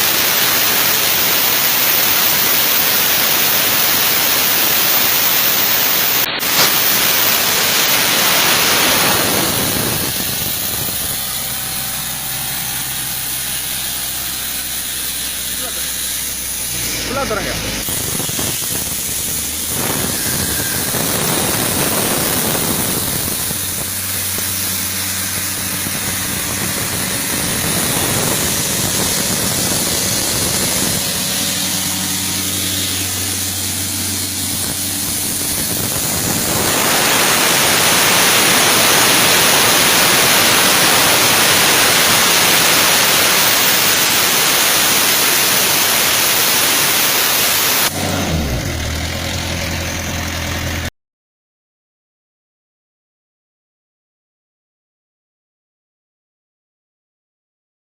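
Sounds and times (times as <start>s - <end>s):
compressed air rushing: 1.5s - 44.8s
diesel engine idling: 9.4s - 22.1s, 22.8s - 35.9s, 47.9s - 50.9s.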